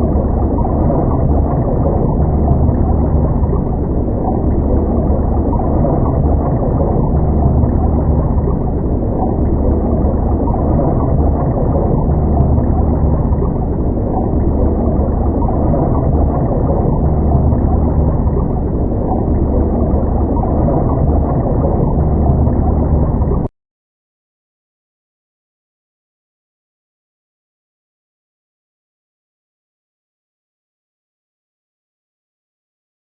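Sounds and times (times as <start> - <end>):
faint water gurgle: 0.0 - 23.5
muffled underwater rumble: 0.0 - 23.5.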